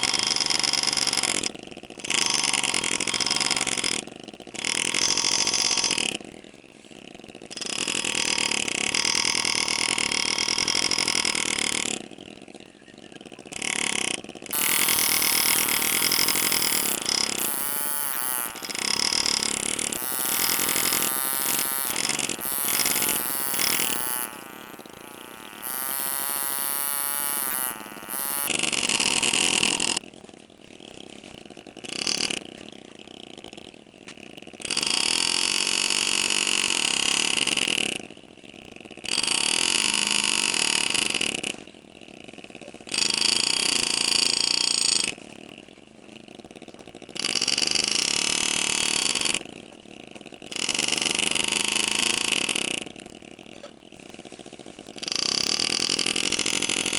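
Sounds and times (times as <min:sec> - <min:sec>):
engraving tool buzzing: 0:14.5 - 0:28.5.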